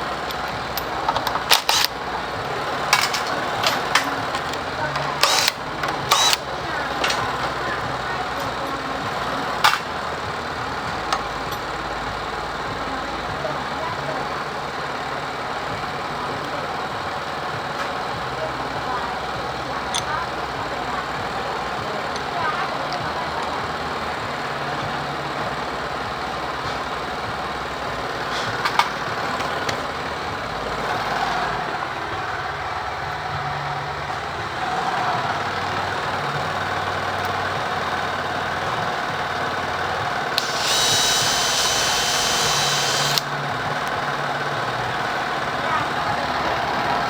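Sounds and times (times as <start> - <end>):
mechanical background noise: 0.0 - 47.0
sharp tool clicks: 1.1 - 2.0, 2.9 - 7.2, 40.4 - 43.4
high steady whine: 40.0 - 45.8.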